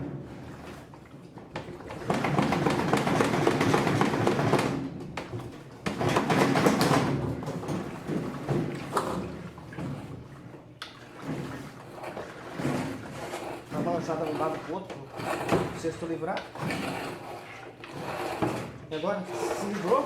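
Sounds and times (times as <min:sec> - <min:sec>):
washing machine basket rattling: 0:05.9 - 0:10.2, 0:11.2 - 0:16.9.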